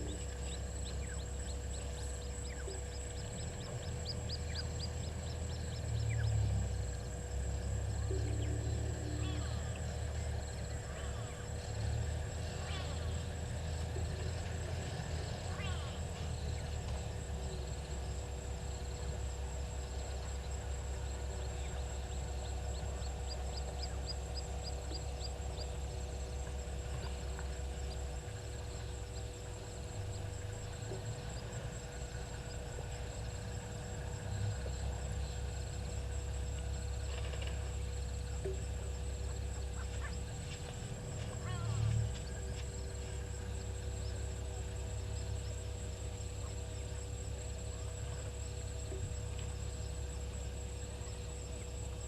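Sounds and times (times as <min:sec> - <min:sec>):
steady low rumble: 0:00.0 - 0:52.0
faint high calls: 0:07.7 - 0:13.6.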